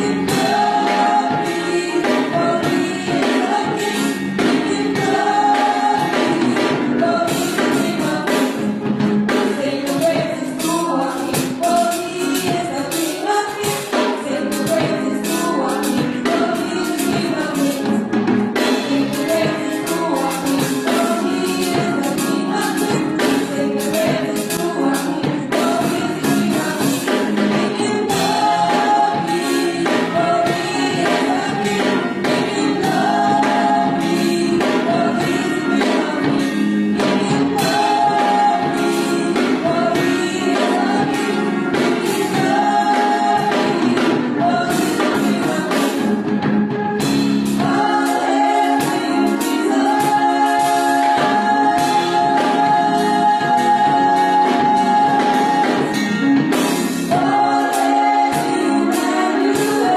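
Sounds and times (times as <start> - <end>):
choir singing with band: 0.0 - 59.9.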